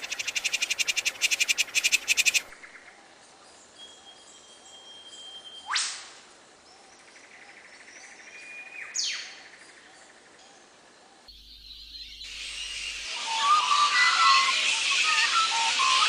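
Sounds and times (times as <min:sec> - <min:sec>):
sharp sweeping bird calls: 0:00.0 - 0:02.6
faint bird chirping: 0:00.0 - 0:05.7
thin held whistle: 0:11.4 - 0:16.0
music: 0:13.1 - 0:16.0.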